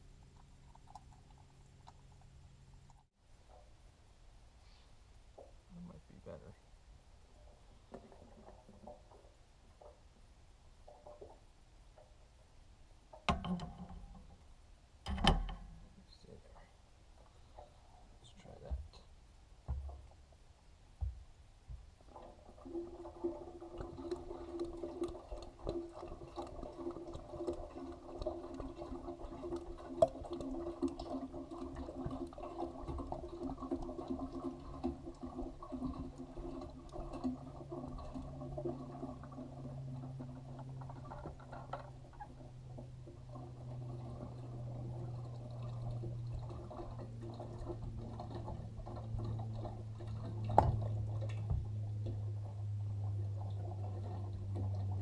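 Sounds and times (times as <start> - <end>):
oil pouring into tank: 7.4 - 12.3, 13.1 - 16.4, 21.9 - 55.0.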